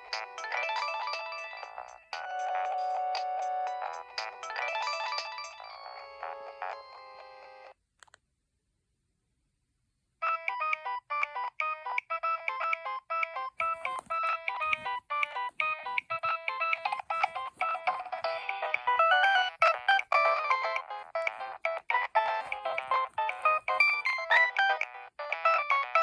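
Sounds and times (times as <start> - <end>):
electronic ringtone tune: 0.0 - 7.7, 10.2 - 26.0.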